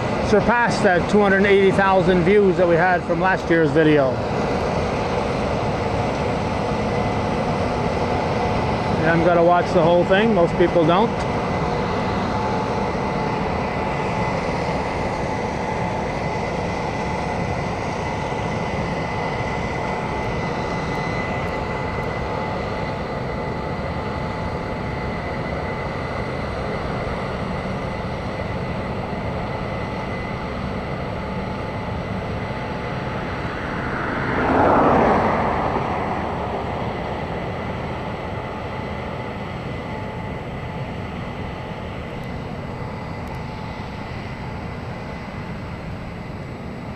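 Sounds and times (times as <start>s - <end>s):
combine harvesters droning: 0.0s - 46.9s
loud rush: 31.6s - 38.6s.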